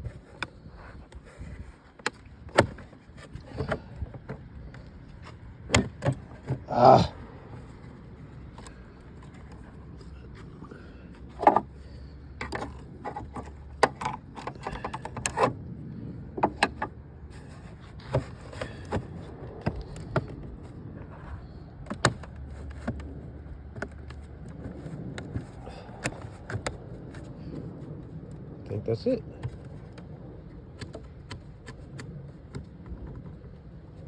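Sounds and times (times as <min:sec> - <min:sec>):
plastic parts clicking and knocking: 0:11.2 - 0:11.8, 0:12.4 - 0:15.6, 0:16.4 - 0:17.0, 0:18.0 - 0:20.7, 0:21.8 - 0:27.3.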